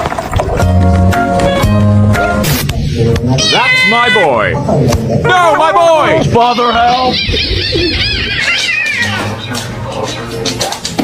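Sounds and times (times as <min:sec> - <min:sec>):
music with bass and drums: 0:00.3 - 0:02.8.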